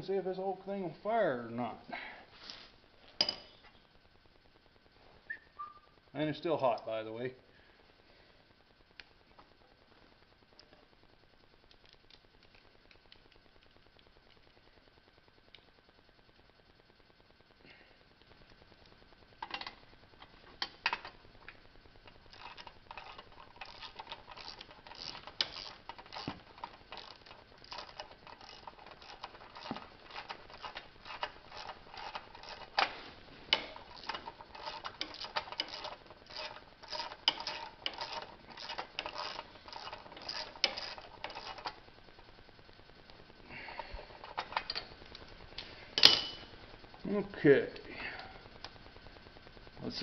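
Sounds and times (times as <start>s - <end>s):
ratchet wrench clicking: 22.3s - 32.9s, 33.5s - 41.7s.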